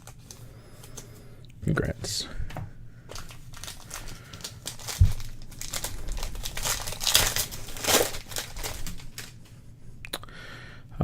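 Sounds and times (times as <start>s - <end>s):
plastic wrapping crinkling and tearing: 0.0s - 1.1s, 3.1s - 9.5s.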